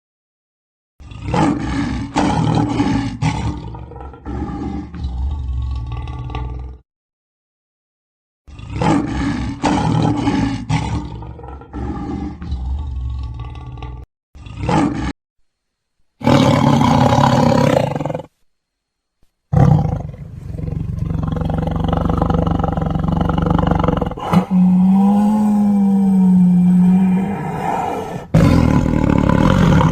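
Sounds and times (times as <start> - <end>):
large carnivore roars and growls: 1.0 - 6.8, 8.5 - 15.1, 16.2 - 18.3, 19.5 - 29.9
long deep animal call: 1.0 - 6.8, 8.5 - 15.1, 19.5 - 29.9.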